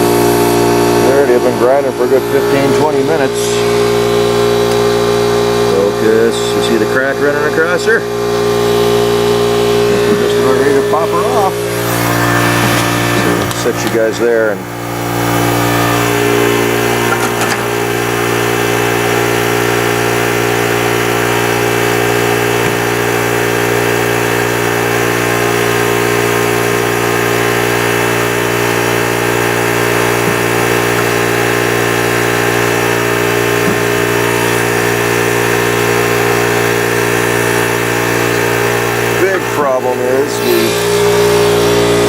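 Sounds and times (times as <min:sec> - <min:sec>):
pneumatic grinder cutting metal: 0:08.2 - 0:42.0.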